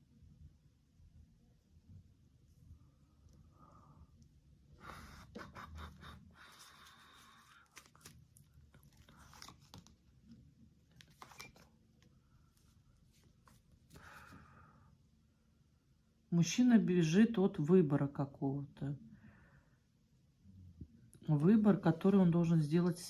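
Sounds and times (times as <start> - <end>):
cards rustling and clicking: 6.5 - 14.4
cards sliding on a table: 11.0 - 11.7.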